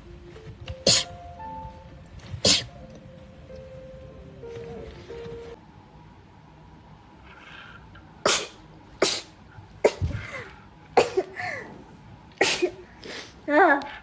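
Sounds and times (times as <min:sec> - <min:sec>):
woman sneezing: 0:00.9 - 0:01.1.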